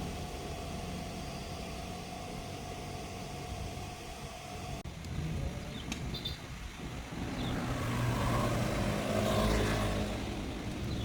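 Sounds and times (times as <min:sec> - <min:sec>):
engine running: 0:00.0 - 0:11.0.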